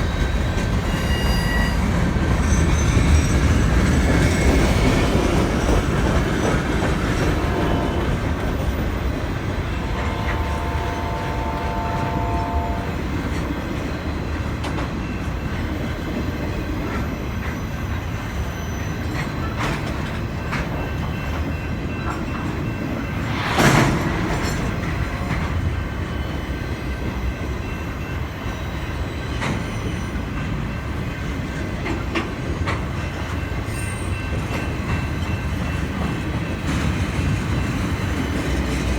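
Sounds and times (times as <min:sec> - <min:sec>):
freight train rumble and clatter: 0:00.0 - 0:38.9
loud bang: 0:23.2 - 0:25.7.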